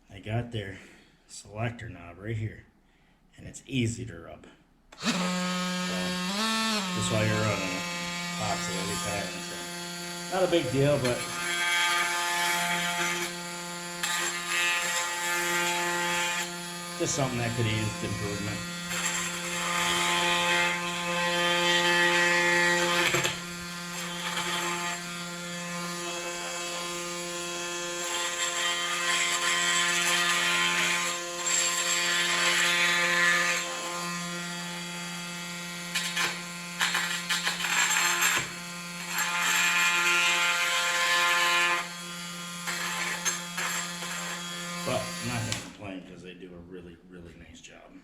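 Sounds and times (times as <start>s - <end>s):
oscillating multi-tool buzzing: 5.0s - 45.7s.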